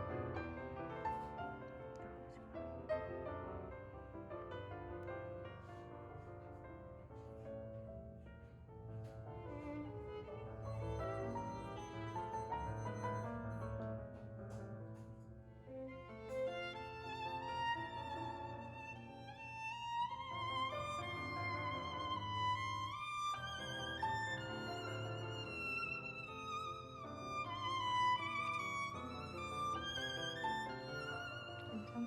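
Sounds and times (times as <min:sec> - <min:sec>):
soft accompaniment: 0:00.0 - 0:32.0
slow violin melody: 0:09.0 - 0:14.6, 0:15.6 - 0:32.0.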